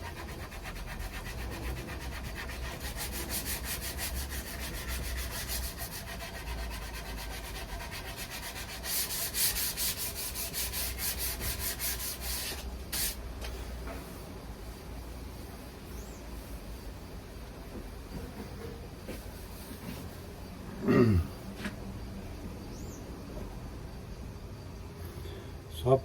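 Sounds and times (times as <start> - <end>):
sandpaper scratching wood: 0.0 - 13.2.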